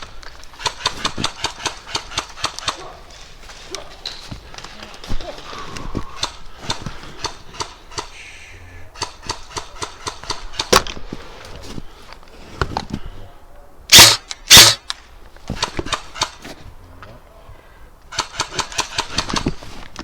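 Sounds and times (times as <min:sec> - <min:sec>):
airsoft gun shots: 0:13.9 - 0:14.9
loud bangs: 0:13.9 - 0:15.0.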